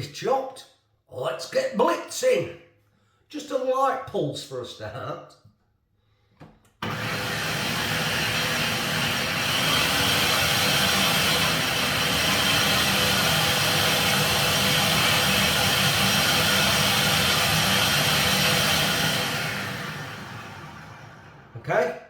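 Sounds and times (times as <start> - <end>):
blender motor running: 6.8 - 21.6.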